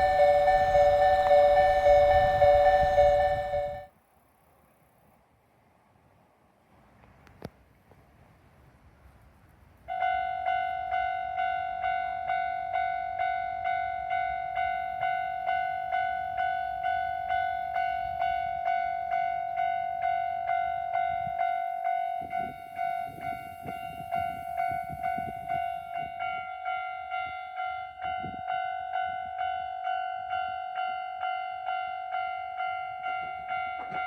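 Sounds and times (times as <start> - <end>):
level crossing bell ringing: 0.0 - 3.9
train rumble and wheel clatter: 0.0 - 3.9, 5.2 - 34.0.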